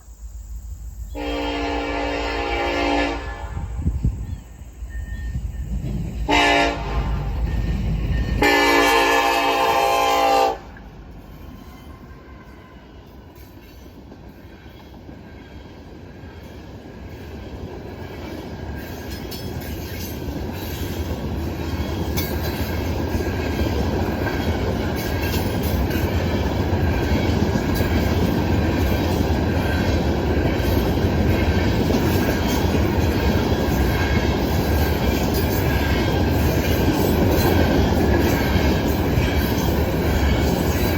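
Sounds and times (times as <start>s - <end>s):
train rumble and wheels on rails: 0.0s - 40.9s
locomotive air horn blast: 1.1s - 3.8s, 6.3s - 7.4s, 8.4s - 10.8s.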